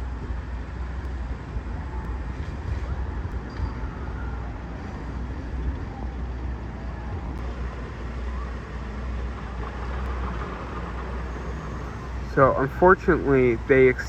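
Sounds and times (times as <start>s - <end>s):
low rumble of distant traffic: 0.0s - 14.0s.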